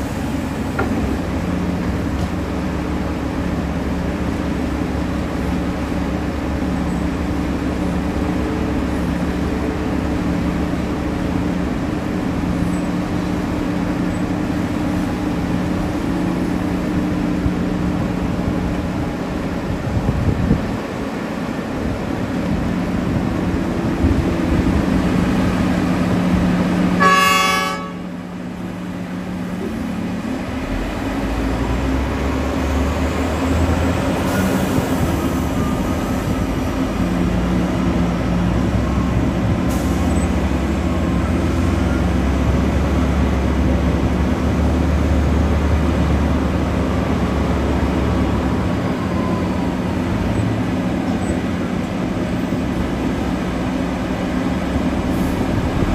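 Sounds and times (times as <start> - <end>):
heavy diesel machinery droning: 0.0 - 55.9
horn blast: 27.0 - 28.1.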